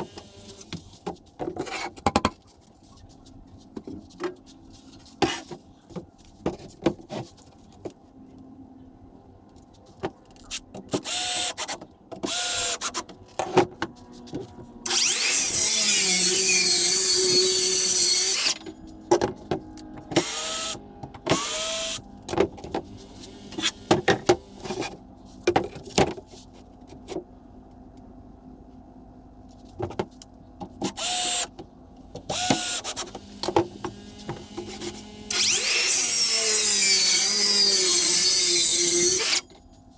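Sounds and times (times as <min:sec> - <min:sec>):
power tool spinning up: 0:14.9 - 0:18.7, 0:20.1 - 0:22.0, 0:32.3 - 0:39.5.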